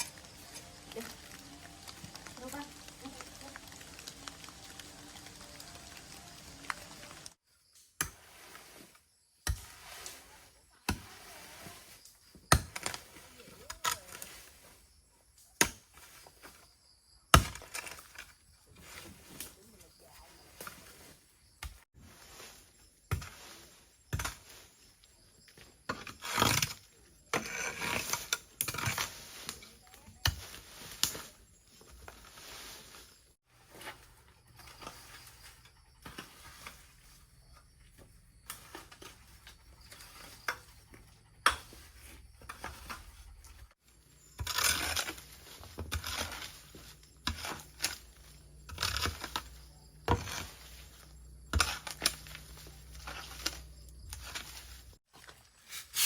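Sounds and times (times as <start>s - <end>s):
handling knocks and rustles: 27.9s - 56.0s.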